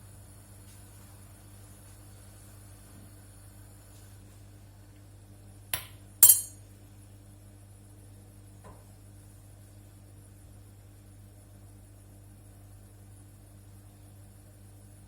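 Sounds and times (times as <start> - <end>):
kitchenware clinking: 5.8 - 6.6.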